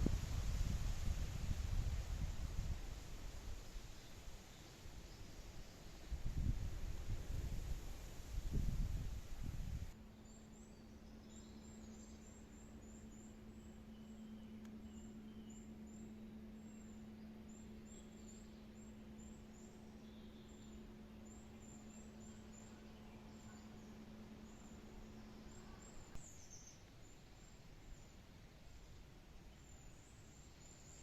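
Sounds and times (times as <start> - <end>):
steady low hum: 0.0 - 31.0
small birds chirping: 10.0 - 28.5.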